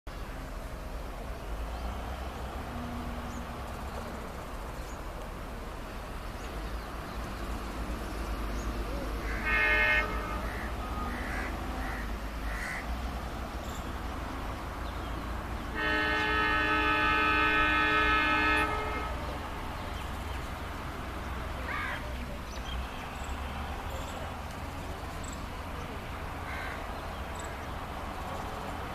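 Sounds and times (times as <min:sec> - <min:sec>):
diesel locomotive horn: 0:02.6 - 0:04.0, 0:09.2 - 0:12.0, 0:15.4 - 0:20.2
crows cawing: 0:09.2 - 0:09.5, 0:10.4 - 0:12.9, 0:21.6 - 0:22.1, 0:26.4 - 0:26.9.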